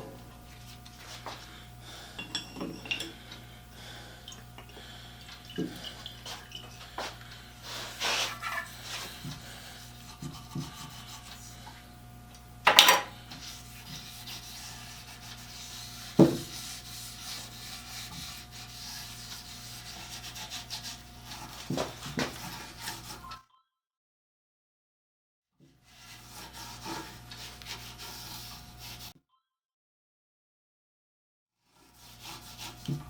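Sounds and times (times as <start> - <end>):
workshop hum: 0.0 - 23.4, 25.9 - 29.2, 31.8 - 33.0
rag rubbing on wood: 5.7 - 11.7, 13.3 - 23.3, 25.9 - 29.1, 31.9 - 33.0.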